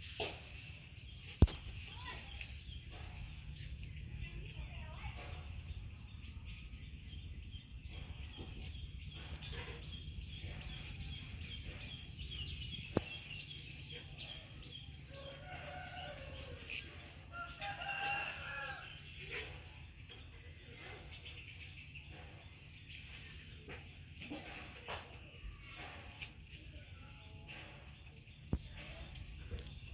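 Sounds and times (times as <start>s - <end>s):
rooster crowing: 17.3s - 19.0s.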